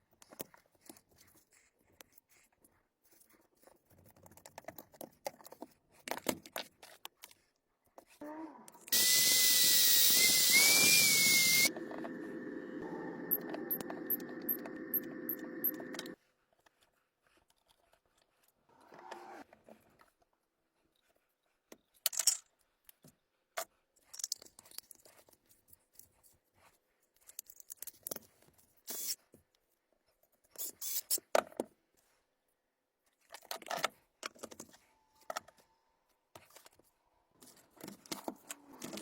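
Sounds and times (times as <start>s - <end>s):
small tools clicking and scraping: 23.6s - 25.4s.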